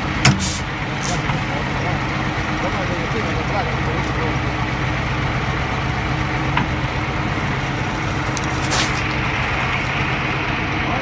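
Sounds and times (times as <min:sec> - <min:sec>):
tractor engine running: 0:00.0 - 0:11.0
short hiss: 0:00.4 - 0:01.2.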